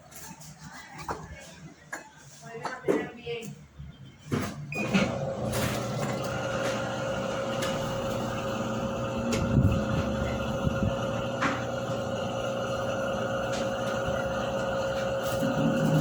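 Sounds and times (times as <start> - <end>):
washing machine rumble and knocking: 4.4 - 16.0
washing machine humming: 4.7 - 16.0.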